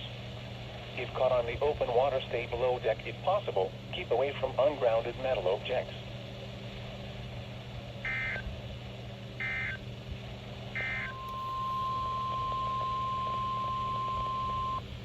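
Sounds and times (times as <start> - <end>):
low steady hum: 0.0 - 15.0
steady warning alarm tone: 8.0 - 8.4, 9.4 - 9.8, 10.8 - 15.0.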